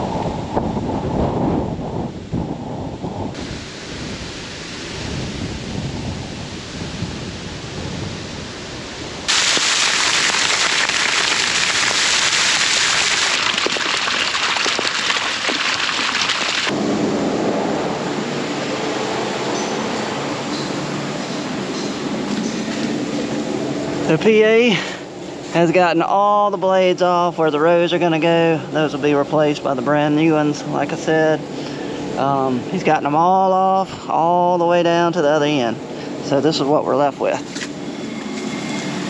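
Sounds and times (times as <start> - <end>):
gusty wind on microphone: 0.0 - 13.7, 15.4 - 24.1
heavy rain hissing: 1.2 - 19.5.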